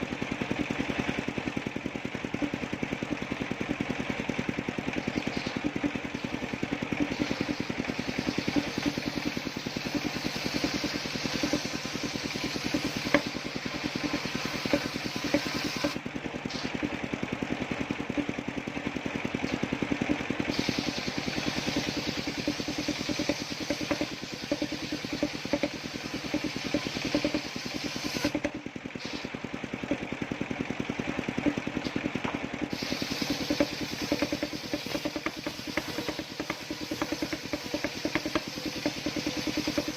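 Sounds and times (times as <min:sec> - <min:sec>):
engine-driven circular saw running: 0:00.0 - 0:39.9
hiss of saw cutting wood: 0:07.0 - 0:16.8, 0:20.5 - 0:29.4, 0:32.7 - 0:39.9.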